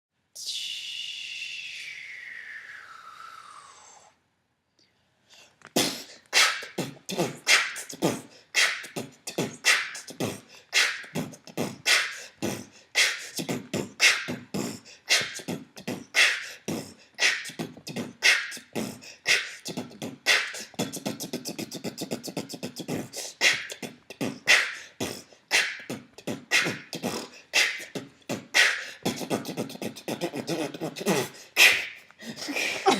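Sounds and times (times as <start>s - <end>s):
falling vocal glide: 0.4s - 4.2s, 5.8s - 32.9s
beatboxing: 5.7s - 32.9s.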